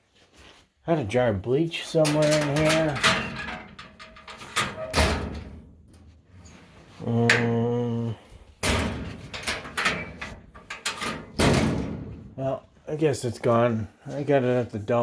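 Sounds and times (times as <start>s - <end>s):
items clattering in cupboard: 2.0s - 7.6s, 8.6s - 12.4s
cabinet door handling: 8.6s - 12.4s.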